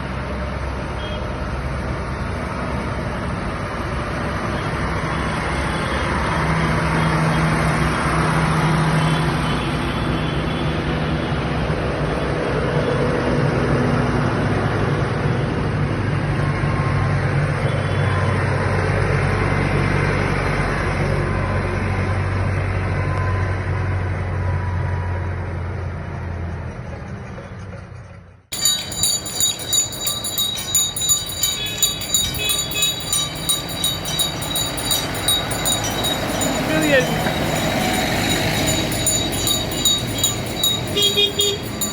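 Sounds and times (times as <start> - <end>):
rhythmic ringing clang: 28.5 - 41.9
tractor engines droning: 28.5 - 41.9.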